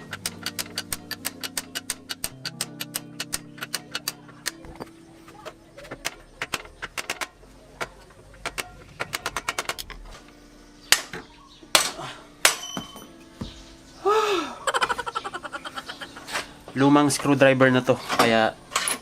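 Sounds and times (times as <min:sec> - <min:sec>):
quick metallic clicks: 0:00.0 - 0:04.6
metal knocks with ring: 0:12.5 - 0:13.6.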